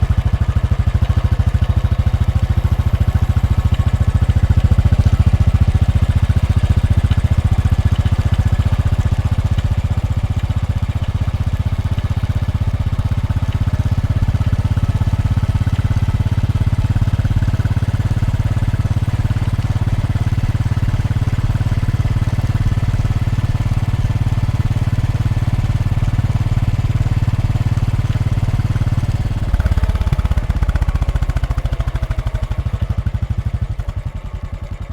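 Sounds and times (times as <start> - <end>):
motorcycle engine idling: 0.0 - 34.9.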